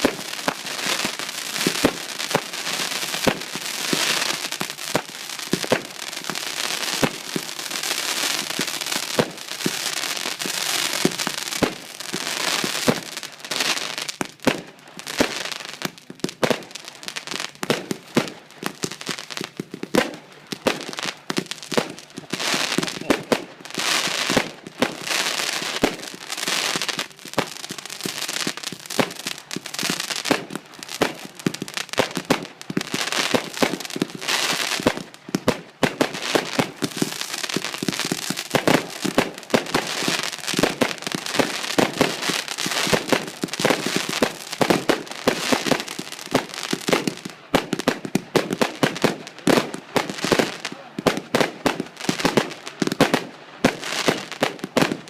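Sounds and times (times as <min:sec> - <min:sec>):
fireworks shots and bangs: 0:00.0 - 0:00.9, 0:21.7 - 0:25.1
fireworks crackling: 0:00.0 - 0:55.0.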